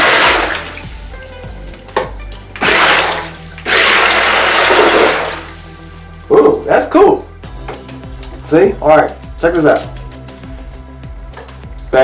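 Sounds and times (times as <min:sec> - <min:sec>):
toy car wheels churning water: 0:02.6 - 0:05.5.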